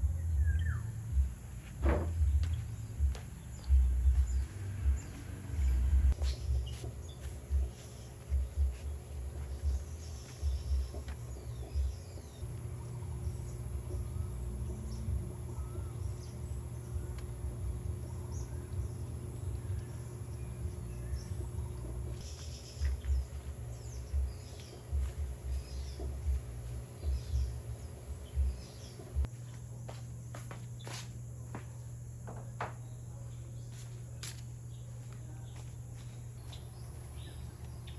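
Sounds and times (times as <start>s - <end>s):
low rumbles: 0.0s - 29.3s
birds chirping: 0.0s - 37.9s
steady low hum: 0.0s - 37.9s.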